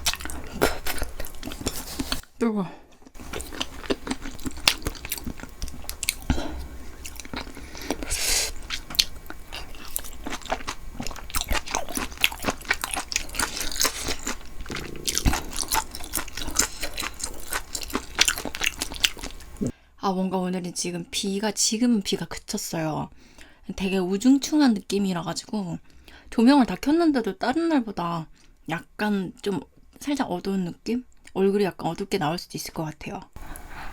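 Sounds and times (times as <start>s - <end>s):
chewing and biting food: 0.0s - 2.2s, 3.1s - 19.7s.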